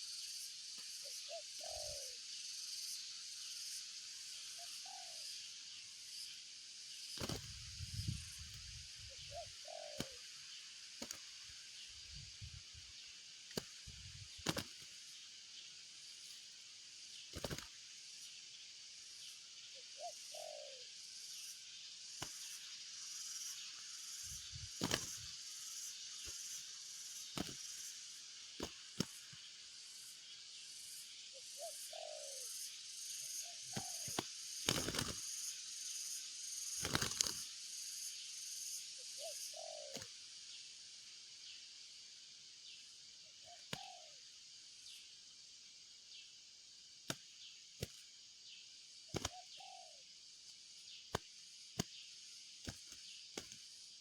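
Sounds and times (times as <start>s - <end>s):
high insect chorus: 0.0s - 54.0s
dove cooing: 1.0s - 2.2s, 4.6s - 5.2s, 9.0s - 10.3s, 19.8s - 20.9s, 31.4s - 32.5s, 33.4s - 35.2s, 39.2s - 40.1s, 43.5s - 44.2s, 49.1s - 50.0s.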